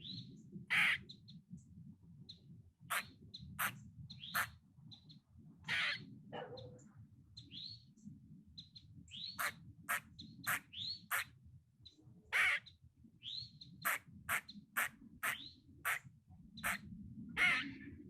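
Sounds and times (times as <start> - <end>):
squirrel harsh call: 0.7 - 1.0, 2.9 - 4.5, 5.7 - 6.0, 9.3 - 11.3, 12.3 - 12.7, 13.8 - 16.0, 17.4 - 17.9
squirrel chucking calls: 0.7 - 1.1, 2.9 - 4.5, 5.7 - 6.0, 9.4 - 11.3, 12.3 - 12.7, 13.8 - 16.8, 17.4 - 17.8.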